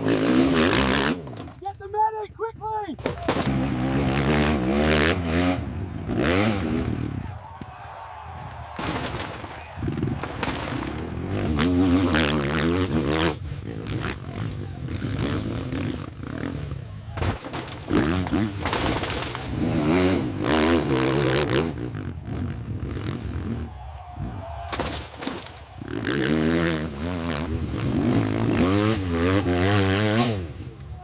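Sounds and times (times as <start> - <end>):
dirt-bike engine revving: 0.0 - 1.4, 3.3 - 7.3, 9.8 - 17.0, 17.8 - 24.4, 25.3 - 30.8
clattering knocks and scraping: 8.8 - 11.5, 17.2 - 19.7, 24.7 - 25.8.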